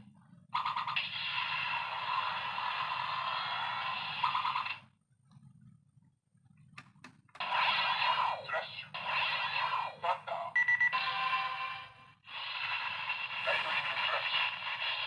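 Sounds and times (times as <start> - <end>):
toy electronic sound effect: 13.2 - 14.6.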